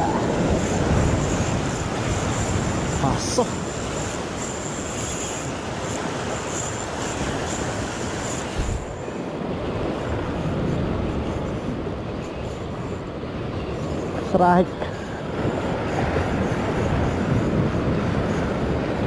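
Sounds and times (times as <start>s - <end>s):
thin high whine: 0.0s - 9.4s
surf on the shore: 0.0s - 19.0s
wind: 0.0s - 19.0s.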